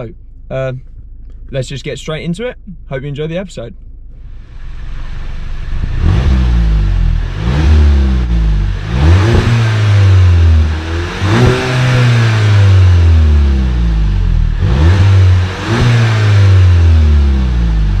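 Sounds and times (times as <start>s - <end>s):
car engine revving: 4.1s - 18.0s.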